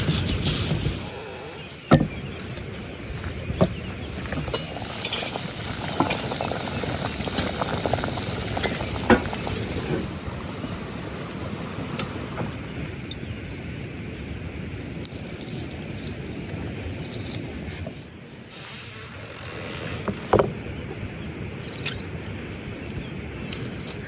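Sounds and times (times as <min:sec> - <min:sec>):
food frying hiss: 0:04.6 - 0:10.3, 0:14.1 - 0:17.7.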